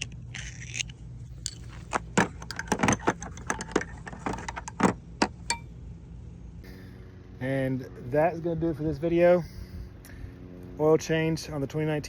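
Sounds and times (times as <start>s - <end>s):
metal tools clinking: 0.4s - 5.7s.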